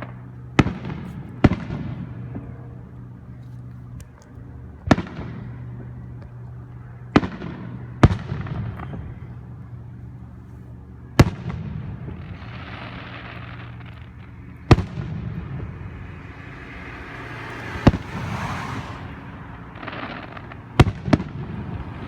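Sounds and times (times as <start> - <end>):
steady low hum: 0.0 - 22.0
distant fireworks bangs: 4.8 - 6.0, 11.2 - 22.0.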